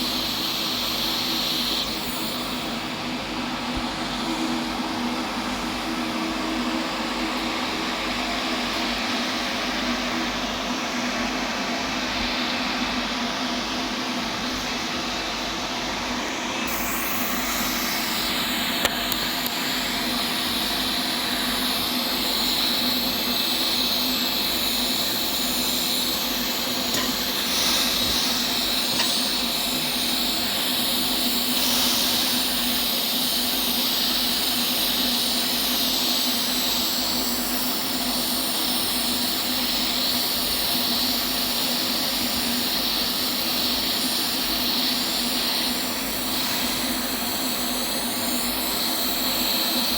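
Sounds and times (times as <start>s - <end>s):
arc welding hiss: 0.0s - 4.3s, 11.4s - 49.9s.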